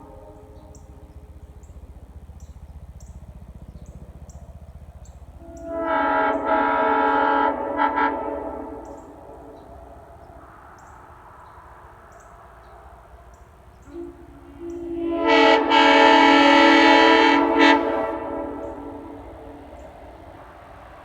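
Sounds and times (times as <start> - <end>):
train horn chord: 0.0 - 1.9, 5.3 - 11.0, 12.6 - 21.0.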